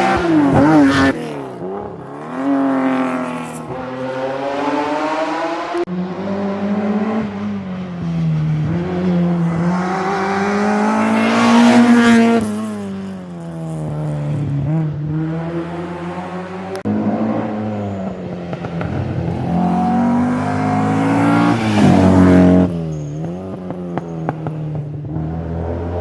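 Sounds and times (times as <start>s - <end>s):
rally car engine accelerating: 0.0s - 26.0s.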